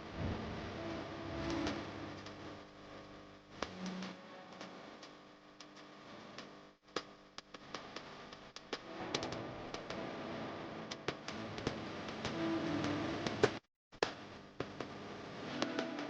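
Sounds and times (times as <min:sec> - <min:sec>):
background music with held tones: 0:00.0 - 0:02.6, 0:03.6 - 0:05.1, 0:08.8 - 0:13.6, 0:15.4 - 0:16.0
ticking beat of sharp clicks: 0:03.6 - 0:10.1.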